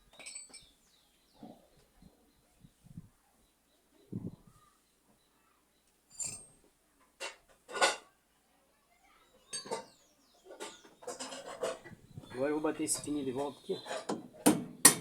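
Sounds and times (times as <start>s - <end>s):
metal tools clanking: 6.1s - 6.6s, 9.5s - 15.0s.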